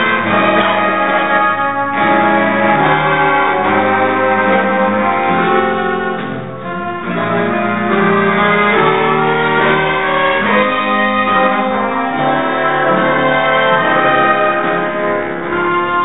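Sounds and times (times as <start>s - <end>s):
jazz band playing slow chords: 0.0s - 16.0s.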